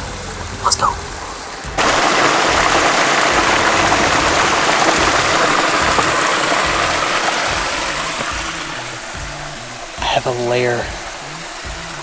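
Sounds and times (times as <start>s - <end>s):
creek rushing: 0.0s - 12.0s.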